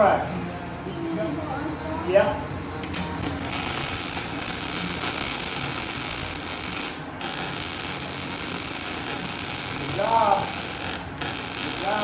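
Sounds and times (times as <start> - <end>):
welding arc crackling: 2.8 - 12.0.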